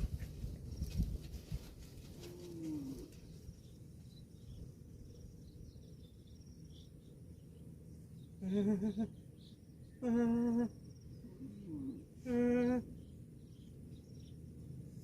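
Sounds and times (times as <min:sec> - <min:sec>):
low outdoor background noise: 0:00.0 - 0:15.0
faint bird chirps: 0:02.5 - 0:14.4
wavering animal call: 0:08.4 - 0:09.2, 0:10.0 - 0:10.8.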